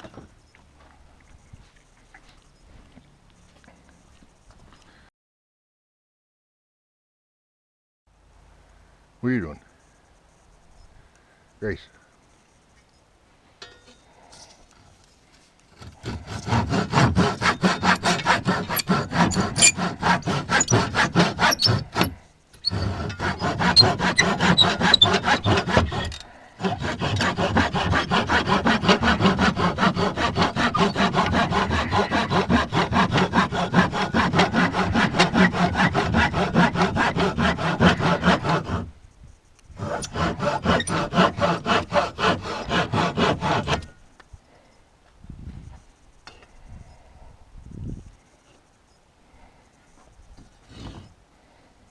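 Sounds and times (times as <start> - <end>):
hand saw cutting wood: 15.7 - 38.9, 39.8 - 43.9.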